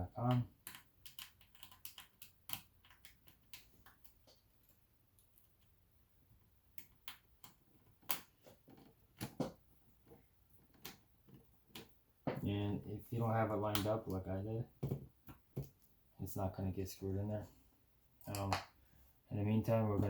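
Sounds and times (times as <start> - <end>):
plastic parts clicking and tapping: 0.3 - 4.5.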